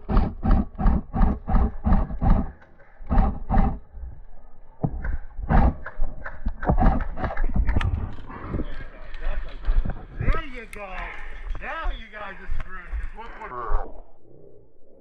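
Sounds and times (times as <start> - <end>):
heavy running footsteps: 0.0 - 3.8, 6.7 - 13.2
sharp clicks and knocks: 0.0 - 3.8, 4.8 - 13.1.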